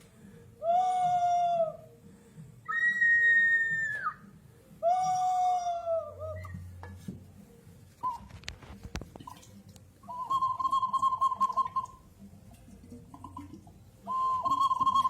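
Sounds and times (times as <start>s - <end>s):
clay whistling pot whistles: 2.7s - 6.7s, 8.0s - 8.3s, 10.0s - 12.2s, 13.2s - 15.0s.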